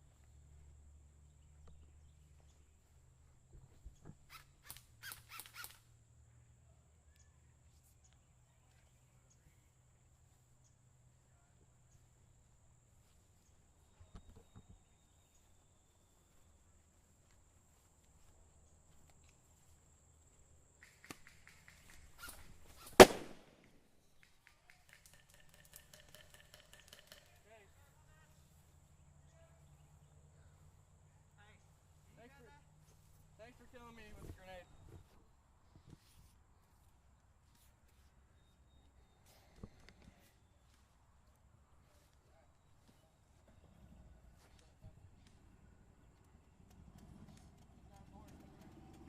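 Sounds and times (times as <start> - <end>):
grenade exploding: 22.9 - 23.6
faint clicks and ticks: 46.1 - 49.0.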